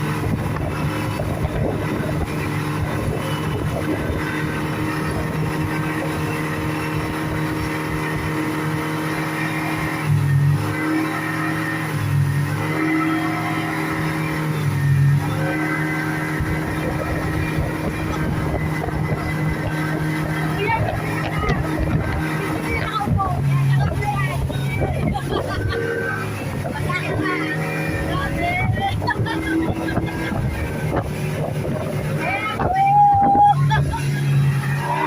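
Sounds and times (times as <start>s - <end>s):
speedboat engine running: 0.0s - 35.0s.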